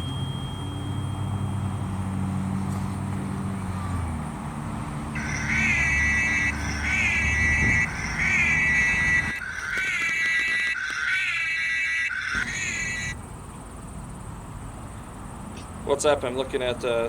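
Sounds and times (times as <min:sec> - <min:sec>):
vehicle engine running: 0:00.0 - 0:10.5
siren wailing: 0:05.1 - 0:13.2.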